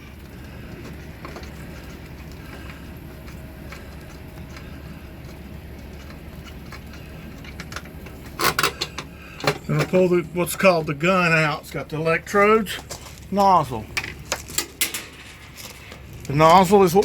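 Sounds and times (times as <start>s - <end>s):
steady low hum: 0.0s - 17.0s
metal parts clicking: 7.4s - 9.9s.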